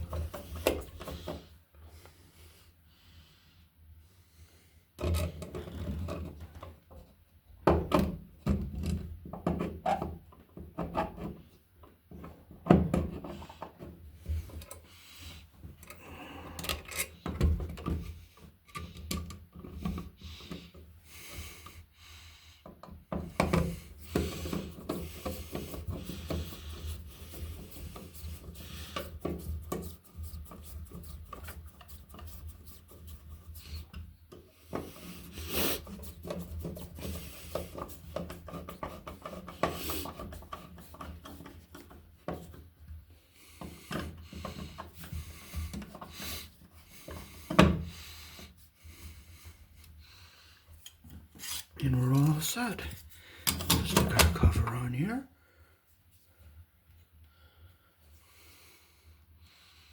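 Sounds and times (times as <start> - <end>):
scraping rubs: 51.2 - 51.8.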